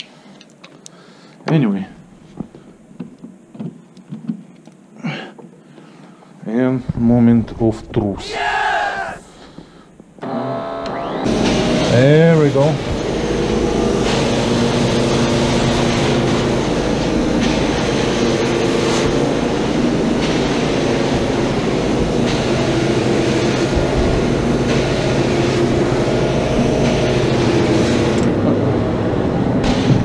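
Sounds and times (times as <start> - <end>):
carpet extractor motor drone: 10.2 - 30.0
steady hum: 11.0 - 30.0.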